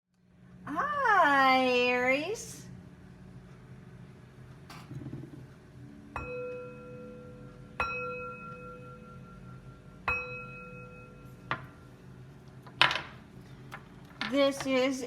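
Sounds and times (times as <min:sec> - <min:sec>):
singing bowl ringing: 0:06.2 - 0:11.9.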